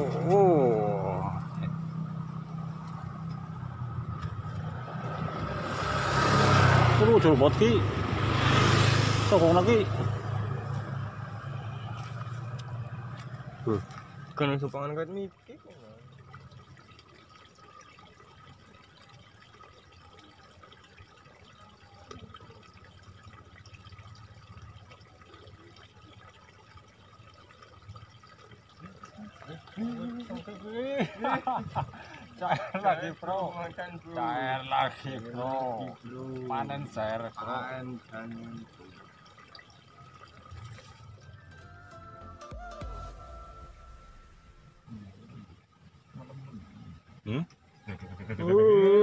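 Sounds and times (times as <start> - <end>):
water trickling and gurgling: 0.0 - 49.0
rising and falling tone: 41.4 - 45.2.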